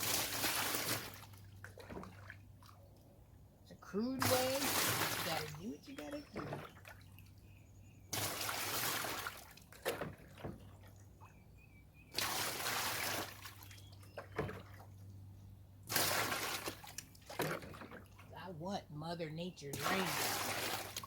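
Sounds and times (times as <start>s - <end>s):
water pouring into bin: 0.0s - 2.3s, 8.2s - 9.5s, 15.9s - 18.0s, 19.8s - 21.0s
water splashing: 0.0s - 2.8s, 4.0s - 7.4s, 8.1s - 11.1s, 12.1s - 15.1s, 15.8s - 18.6s, 19.6s - 21.0s.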